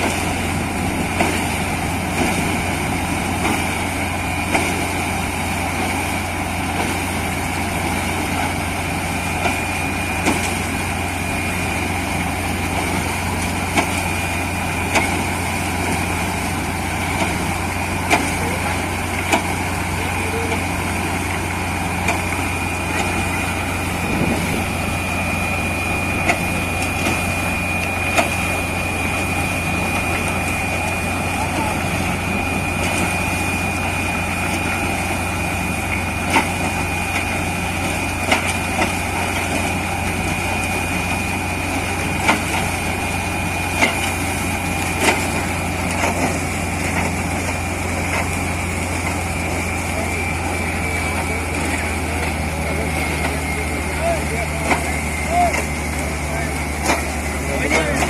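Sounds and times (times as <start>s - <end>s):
drilling rig engine drone: 0.0s - 58.0s
high whine: 6.8s - 46.0s.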